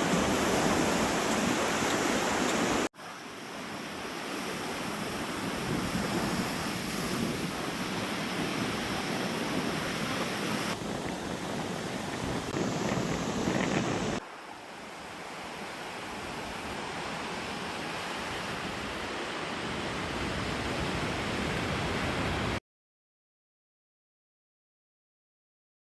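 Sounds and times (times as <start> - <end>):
waves washing on beach: 0.0 - 22.6
wind buffeting microphone: 5.0 - 14.2.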